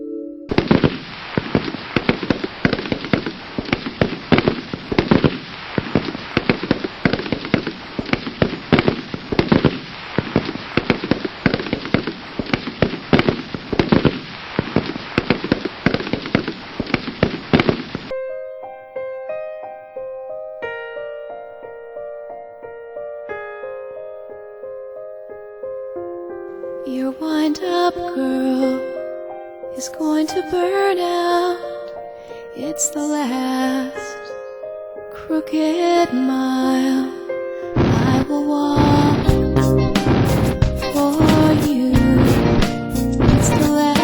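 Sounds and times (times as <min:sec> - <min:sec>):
piano music: 0:00.0 - 0:09.8, 0:18.1 - 0:44.0.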